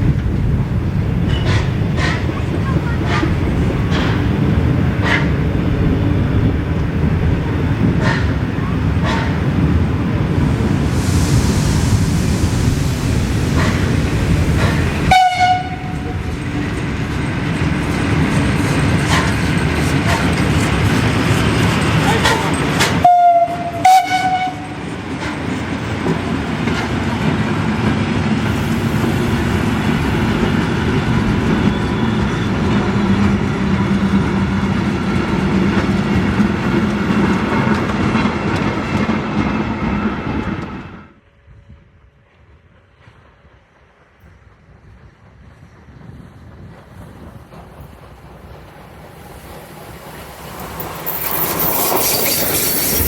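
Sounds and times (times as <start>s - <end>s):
train wheels rumbling: 0.0s - 53.0s
steam locomotive whistle: 15.0s - 16.3s, 22.2s - 24.9s.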